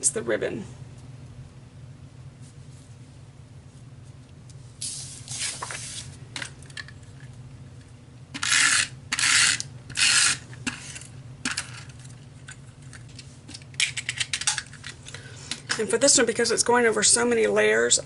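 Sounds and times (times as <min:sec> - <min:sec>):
paper sliding rustle: 0:04.8 - 0:06.2.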